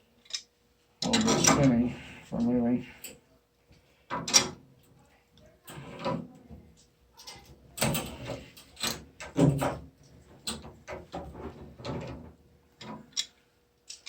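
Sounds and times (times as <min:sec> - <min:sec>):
wrenches clanking on metal fitting: 0:01.0 - 0:03.2, 0:04.1 - 0:04.6, 0:07.2 - 0:09.8.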